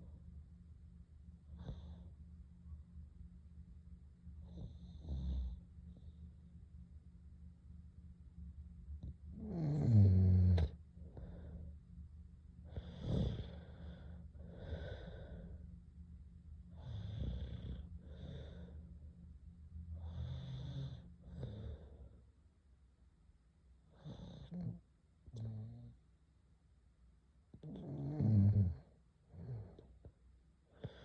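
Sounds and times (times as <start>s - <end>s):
person snoring: 9.4s - 11.4s, 12.7s - 15.5s, 27.6s - 28.8s
breathing in and out: 11.0s - 11.9s, 12.6s - 15.8s, 16.7s - 19.3s, 29.3s - 31.0s.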